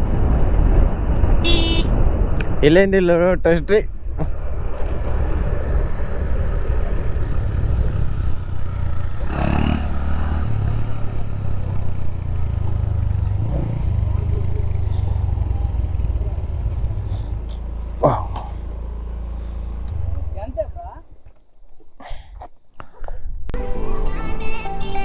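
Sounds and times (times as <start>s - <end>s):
motorcycle engine rumble: 0.0s - 2.6s, 3.9s - 23.5s
clatter from rough road: 4.1s - 23.2s.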